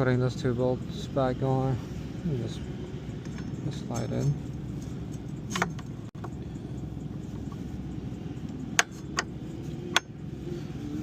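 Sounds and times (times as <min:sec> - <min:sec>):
low background rumble: 0:00.0 - 0:11.0
metallic clicks of brake caliper: 0:08.3 - 0:10.2.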